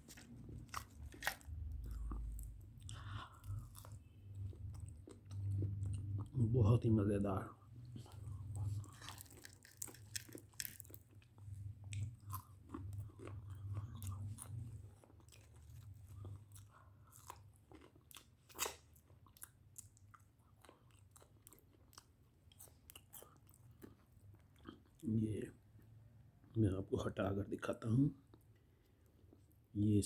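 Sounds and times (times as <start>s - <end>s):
person chewing crunchy food: 0.0s - 6.4s, 7.6s - 25.0s.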